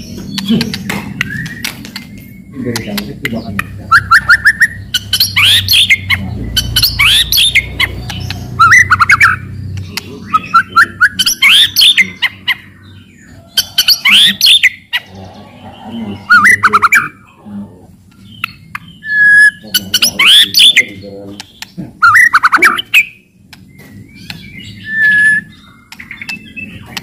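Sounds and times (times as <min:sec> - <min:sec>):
songbird whistling and clicking: 0:00.1 - 0:12.0, 0:18.1 - 0:27.0.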